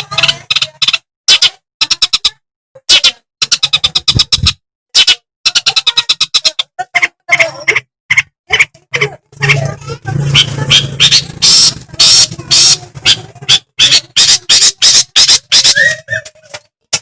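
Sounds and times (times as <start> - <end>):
shrike singing: 9.5 - 16.3.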